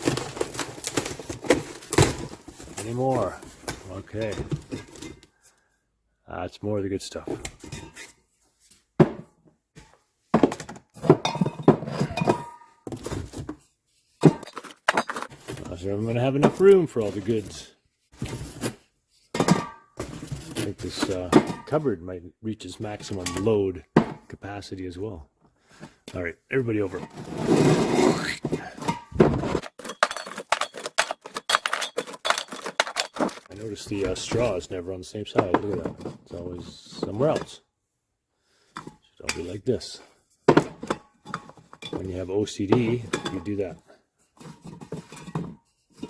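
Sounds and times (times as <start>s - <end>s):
packaging rustling: 0.0s - 3.9s, 29.3s - 33.5s
cans and bottles clinking on shelf: 0.0s - 5.3s, 9.0s - 17.6s, 18.2s - 22.0s, 22.8s - 24.4s, 26.8s - 37.6s, 38.7s - 46.0s
rustling and shuffling: 0.0s - 5.6s, 25.4s - 37.6s.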